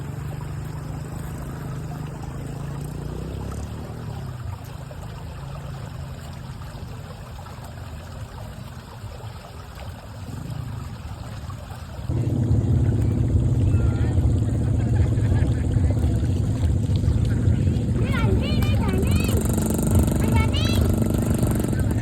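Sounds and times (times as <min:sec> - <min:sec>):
river water running: 0:00.0 - 0:22.0
deep low rumble: 0:12.1 - 0:22.0.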